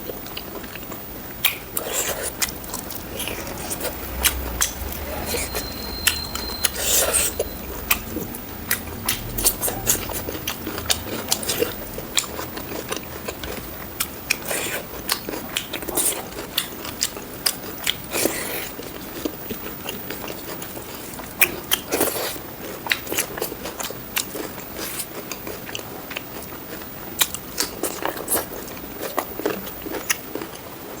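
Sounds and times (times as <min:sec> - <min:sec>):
person chewing crunchy food: 0:00.0 - 0:31.0
wet mouth clicks: 0:01.4 - 0:02.5.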